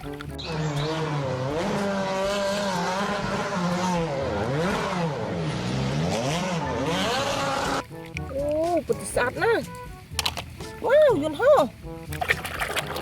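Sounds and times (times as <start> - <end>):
car engine revving: 0.4 - 7.8.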